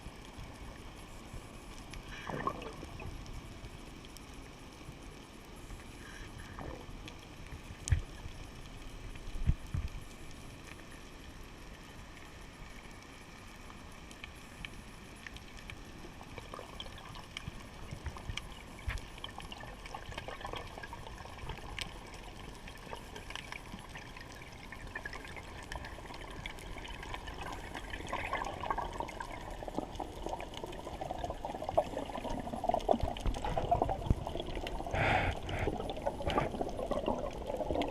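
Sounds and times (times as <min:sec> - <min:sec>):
muffled underwater water noise: 0:00.0 - 0:37.9.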